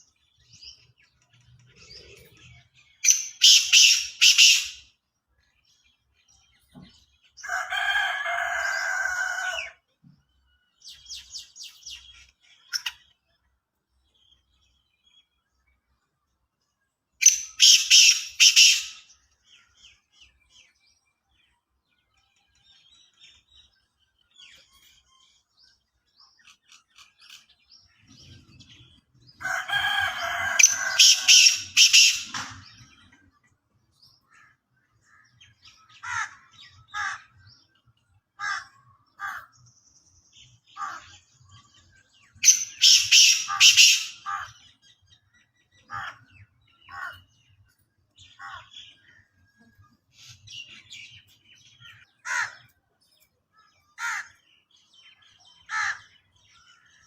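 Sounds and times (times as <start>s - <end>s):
other birds chirping: 0.0s - 57.0s
bird harsh grating call: 3.0s - 4.9s, 17.2s - 19.1s, 29.5s - 33.0s, 42.4s - 44.7s, 52.2s - 52.7s.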